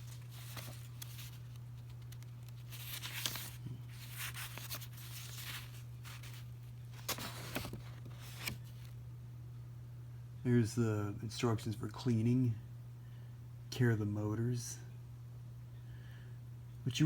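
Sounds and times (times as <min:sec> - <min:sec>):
paper pages rustling: 0:00.0 - 0:09.0
steady low hum: 0:00.0 - 0:17.0.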